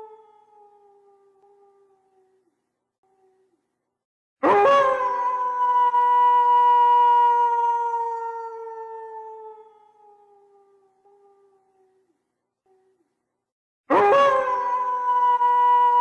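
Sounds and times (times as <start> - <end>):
wolf howling: 4.4 - 11.4.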